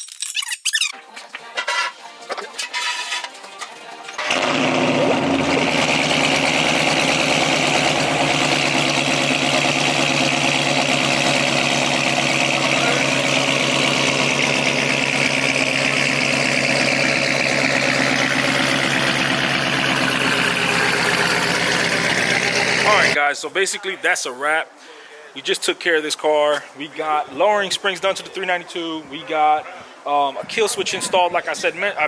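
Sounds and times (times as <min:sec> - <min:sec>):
car engine idling: 0:04.2 - 0:23.2.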